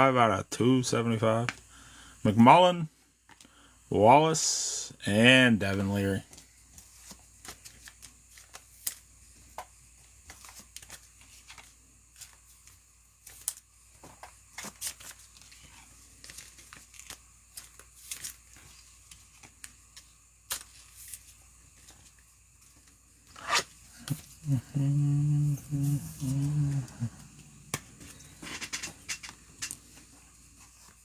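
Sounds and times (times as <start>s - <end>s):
cards rustling and clicking: 6.1s - 24.4s, 26.0s - 31.0s
card wrappers tearing and crinkling: 6.9s - 9.1s, 10.3s - 19.8s, 20.4s - 22.2s.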